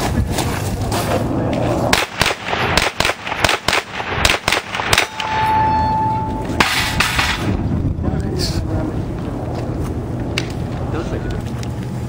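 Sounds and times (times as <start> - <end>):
rapid gunfire: 1.9 - 5.2
steady high tone: 4.9 - 7.6.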